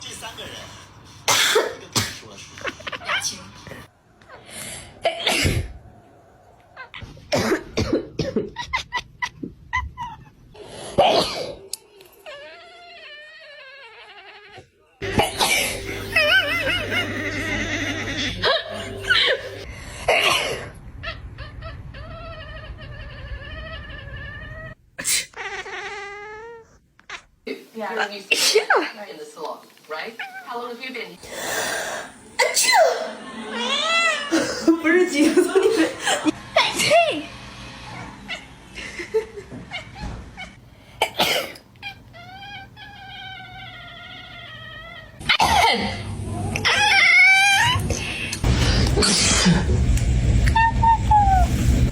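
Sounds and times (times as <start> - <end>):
person coughing: 15.0 - 16.0, 41.0 - 41.6, 45.4 - 46.0
cat meowing: 21.0 - 27.3, 33.5 - 34.4.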